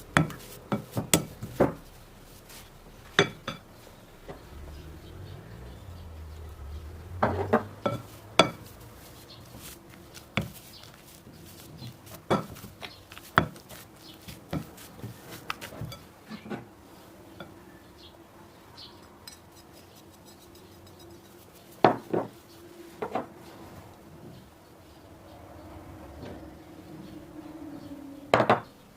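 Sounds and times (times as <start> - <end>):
utensils clinking against dishes: 11.6 - 12.7, 19.0 - 22.0.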